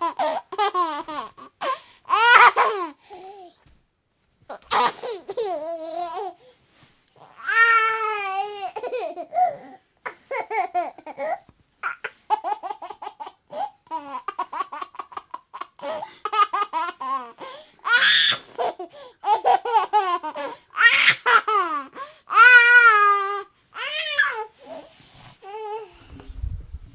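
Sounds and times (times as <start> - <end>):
baby laughing: 0.0 - 3.0, 4.5 - 6.4, 7.4 - 23.1.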